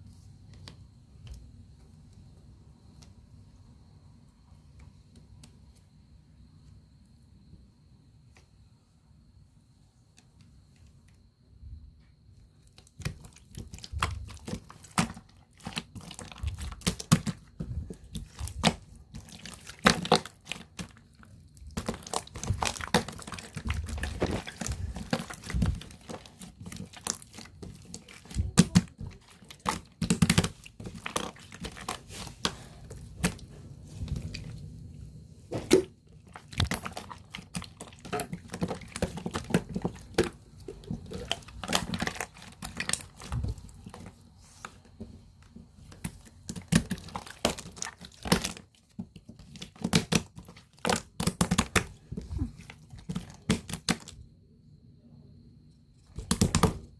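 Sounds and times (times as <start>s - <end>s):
slime squelching and popping: 12.7s - 34.6s, 35.5s - 44.2s, 45.9s - 54.2s, 56.1s - 56.9s.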